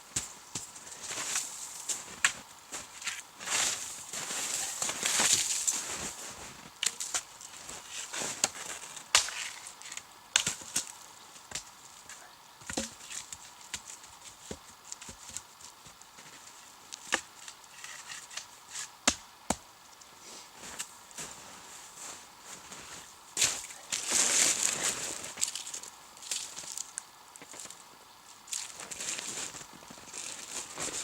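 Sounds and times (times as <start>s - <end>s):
hatchet chopping wood: 12.7s - 13.0s, 19.1s - 19.6s.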